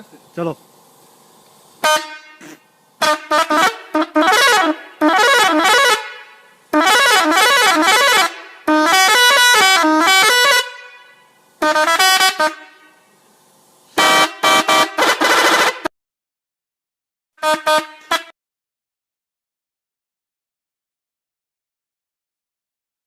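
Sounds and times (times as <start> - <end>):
multi-tone air horn tune: 1.8 - 13.2, 13.9 - 15.9, 17.4 - 18.4.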